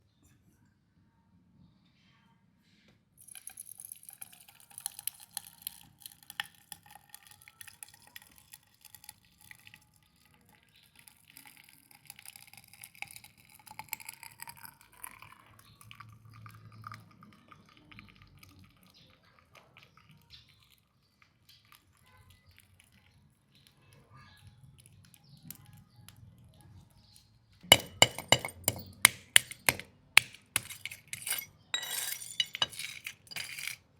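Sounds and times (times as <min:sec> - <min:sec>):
metal clinks and scrapes: 0:27.7 - 0:33.9.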